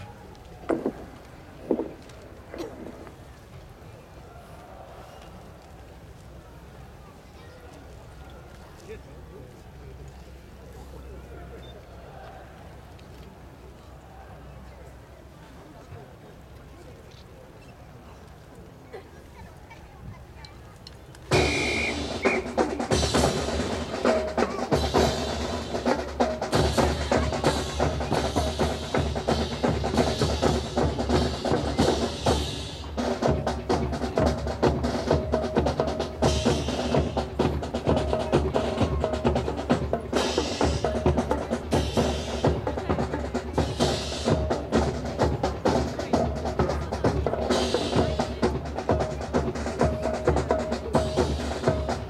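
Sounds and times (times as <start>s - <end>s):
marching snare and bass drums: 0.6s - 3.2s, 21.3s - 52.0s.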